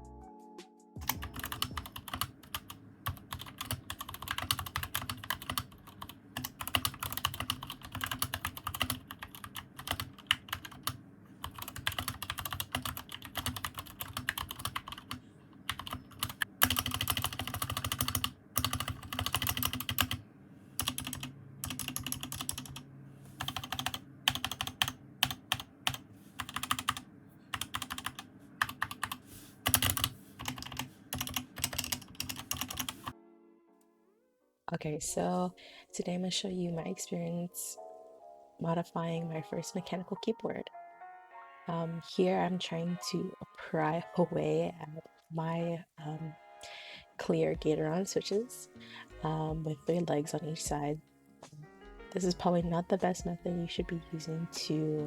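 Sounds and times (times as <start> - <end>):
mechanical keyboard typing: 1.0 - 20.2, 20.8 - 22.8, 23.4 - 33.1.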